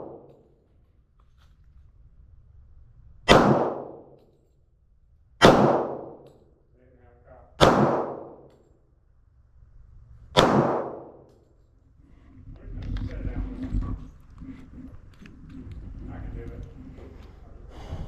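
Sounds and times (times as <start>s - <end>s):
gunshots echoing: 0.0s - 0.3s, 3.3s - 4.2s, 5.4s - 6.3s, 7.6s - 8.5s, 10.3s - 11.3s.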